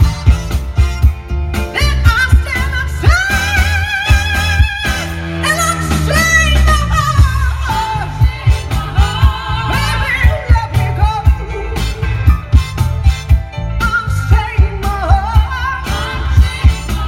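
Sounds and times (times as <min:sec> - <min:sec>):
bass: 0:00.0 - 0:17.0
person singing with vibrato: 0:01.7 - 0:12.4.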